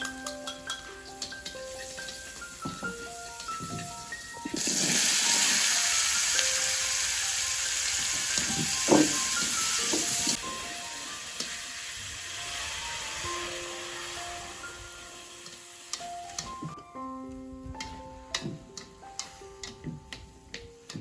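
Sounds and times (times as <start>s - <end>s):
soft piano music: 0.0s - 21.0s
loud steady hiss: 4.6s - 16.4s
soft knocks: 8.9s - 9.2s.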